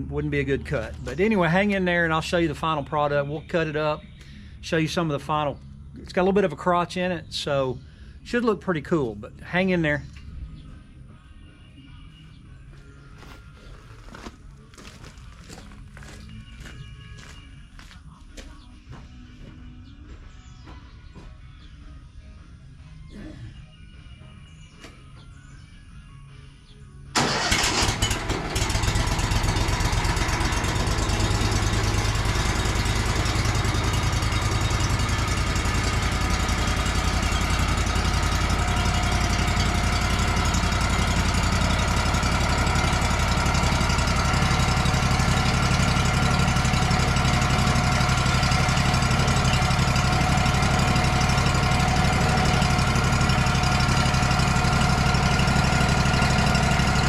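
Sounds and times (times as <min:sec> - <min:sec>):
sawmill engine running: 0:00.0 - 0:03.2, 0:27.2 - 0:57.0.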